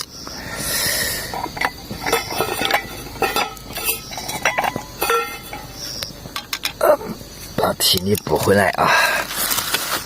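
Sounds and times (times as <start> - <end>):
utensils scraping cooking pot: 1.1 - 6.8.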